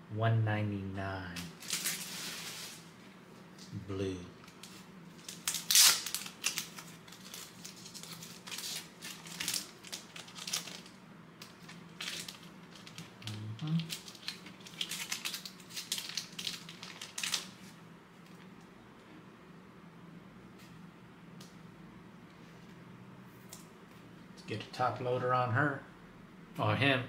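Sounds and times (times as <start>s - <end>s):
card sleeves crinkling and clicking: 4.4s - 18.6s.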